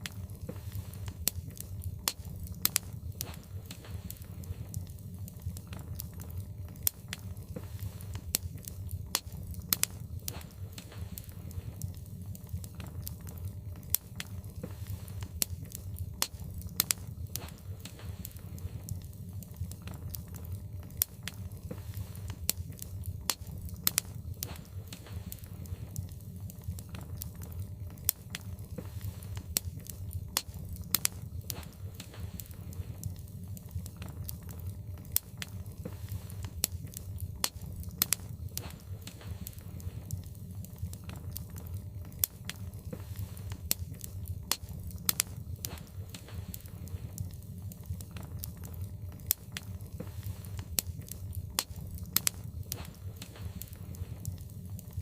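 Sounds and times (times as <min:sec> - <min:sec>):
fire low rumble: 0:00.0 - 0:55.0
logs crackling and popping: 0:00.0 - 0:55.0.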